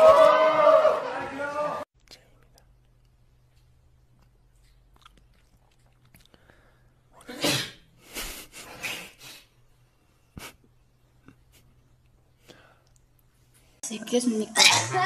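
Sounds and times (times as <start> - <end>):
person sneezing loudly: 7.2 - 7.9.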